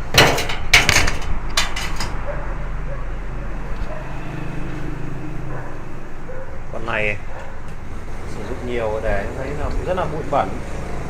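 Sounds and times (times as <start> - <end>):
parts clicking and rattling: 0.0 - 2.3.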